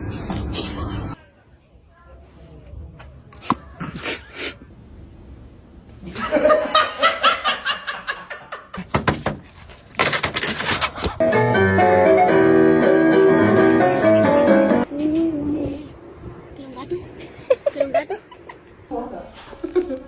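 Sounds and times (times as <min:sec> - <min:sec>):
clatter of sharp hits: 0:08.8 - 0:10.9
piano music: 0:11.2 - 0:14.9
person laughing: 0:17.2 - 0:18.8.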